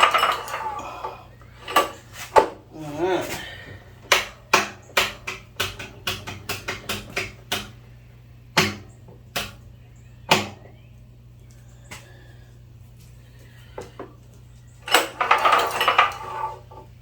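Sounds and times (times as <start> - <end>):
hard objects clacking: 0.0 - 2.6, 14.8 - 17.0.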